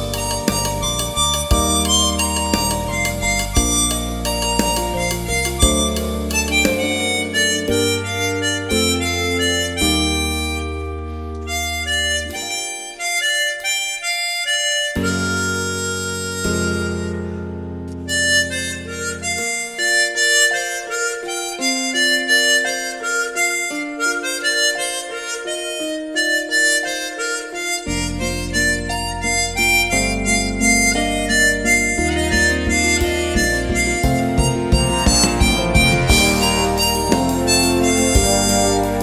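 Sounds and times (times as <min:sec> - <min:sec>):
harmonica melody: 0:00.0 - 0:39.0
low sustained accompaniment: 0:28.2 - 0:39.0.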